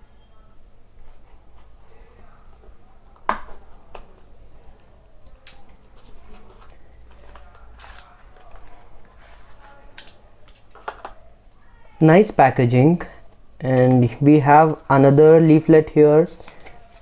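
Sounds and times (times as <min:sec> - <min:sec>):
packaging rustling: 0:16.3 - 0:17.0.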